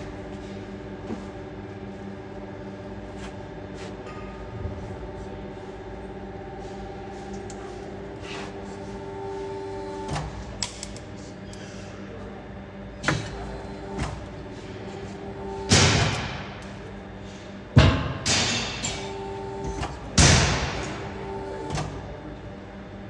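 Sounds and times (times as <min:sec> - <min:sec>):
steady machine hum: 0:00.0 - 0:23.0
heavy machinery thuds: 0:15.6 - 0:16.6, 0:17.8 - 0:18.8.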